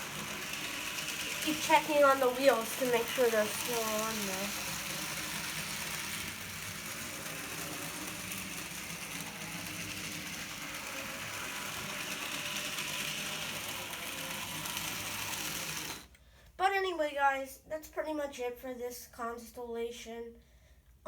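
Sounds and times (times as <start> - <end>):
model train motor whirring: 0.0 - 16.2.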